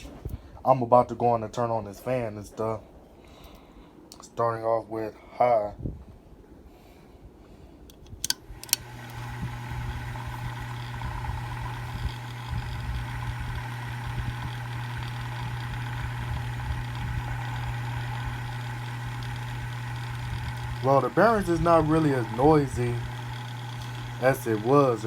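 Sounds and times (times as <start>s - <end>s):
ceiling fan motor humming: 7.8s - 25.0s
fan switch clicks: 7.9s - 9.6s.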